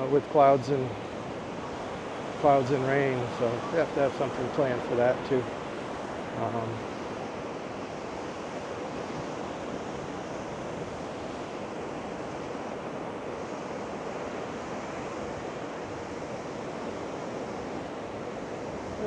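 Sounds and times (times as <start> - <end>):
surf breaking on beach: 0.0 - 19.0
wind on microphone: 0.0 - 19.0.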